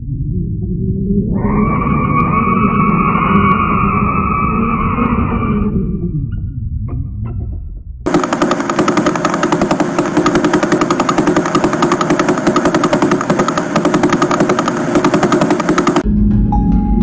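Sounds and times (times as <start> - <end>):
low hum: 0.0 - 16.6
harsh fast-pulsing buzz: 8.1 - 16.0.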